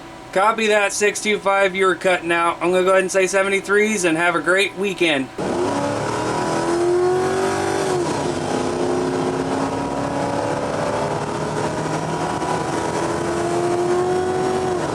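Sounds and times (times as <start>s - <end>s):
radio static: 0.4s - 5.4s.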